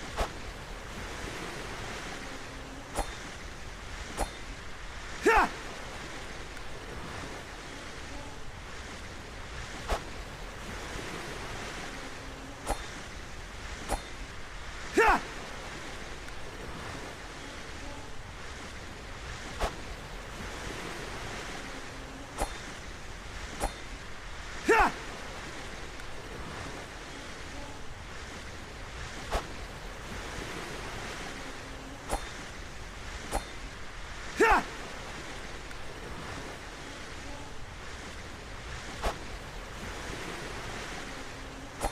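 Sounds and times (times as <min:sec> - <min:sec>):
wind-like hiss: 0:00.0 - 0:41.9
sword swish: 0:22.4 - 0:22.7, 0:29.2 - 0:29.6, 0:32.1 - 0:32.4.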